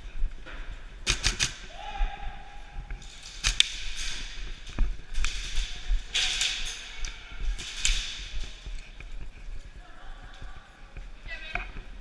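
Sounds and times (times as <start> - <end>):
airsoft gun shots: 1.0 - 1.6.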